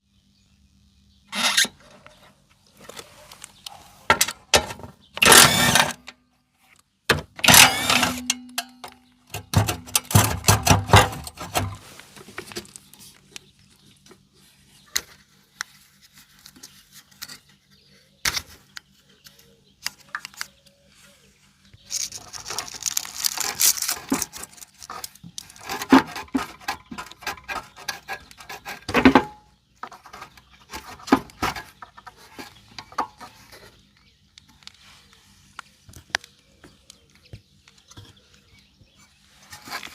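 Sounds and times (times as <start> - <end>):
faint steady hum: 0.0 - 39.9
tools clicking and scraping on metal: 2.9 - 6.2, 7.1 - 11.8, 21.9 - 33.8.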